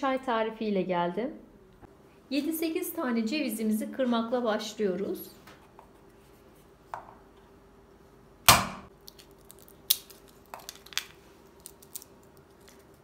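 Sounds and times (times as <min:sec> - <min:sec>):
walnut shells cracking: 0:08.5 - 0:13.0.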